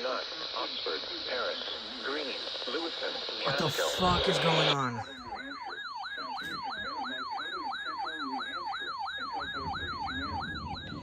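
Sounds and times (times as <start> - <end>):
electronic alert siren sweeping: 3.5 - 11.0.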